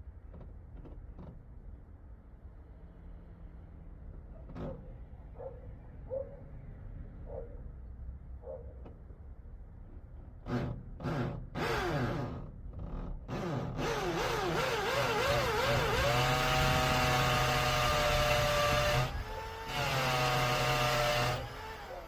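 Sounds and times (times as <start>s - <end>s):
electric drill boring into wall: 10.5s - 12.5s, 13.3s - 22.0s.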